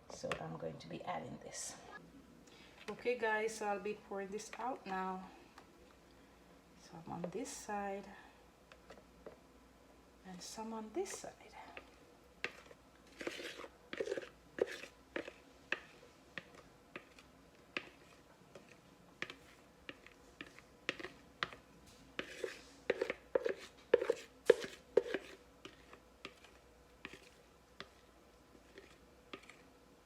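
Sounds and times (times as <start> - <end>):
utensil scraping a bowl: 11.8 - 21.6, 22.2 - 29.7.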